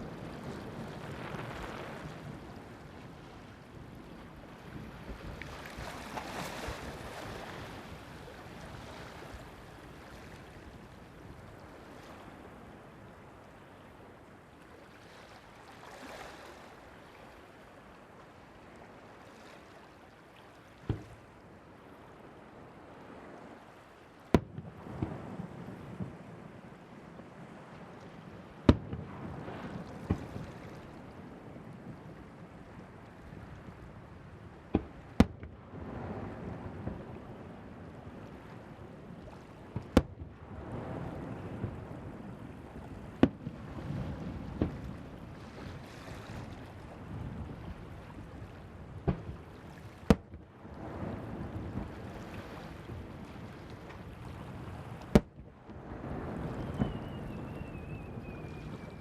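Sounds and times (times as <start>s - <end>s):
surf: 0.0s - 59.0s
wind rumble on microphone: 0.0s - 59.0s
fireworks bangs: 56.1s - 59.0s.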